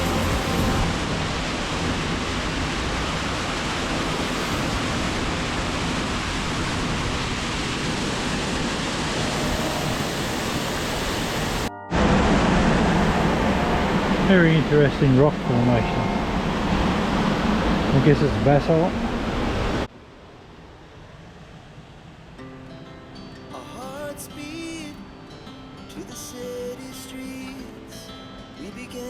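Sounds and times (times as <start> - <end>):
waterfall rushing: 0.0 - 19.9.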